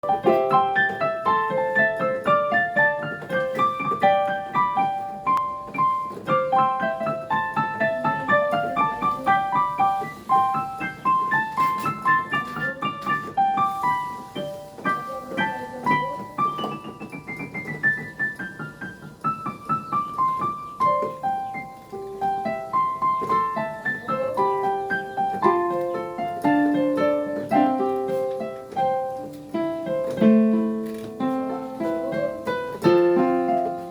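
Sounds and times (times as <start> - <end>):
piano playing christmas music: 0.0 - 33.9.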